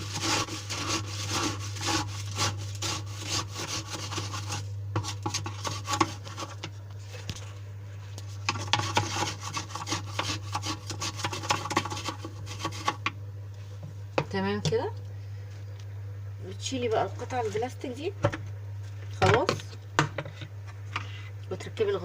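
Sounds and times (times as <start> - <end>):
spoon scraping coarse salt: 0.0 - 6.7, 8.3 - 13.1.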